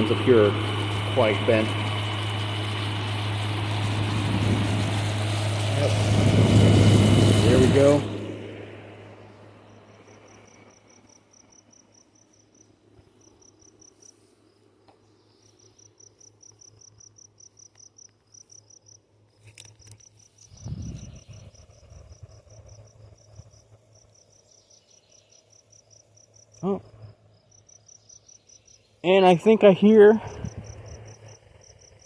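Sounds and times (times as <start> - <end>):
low hum: 0.0 - 32.0
cricket chirping: 9.6 - 32.0.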